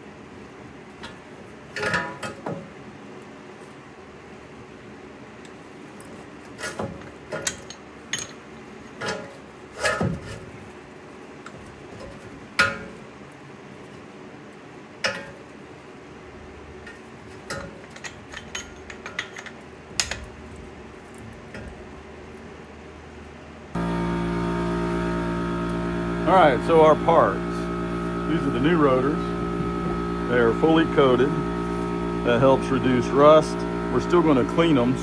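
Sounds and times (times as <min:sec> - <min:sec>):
metal tools clinking and knocking: 0:17.6 - 0:20.3.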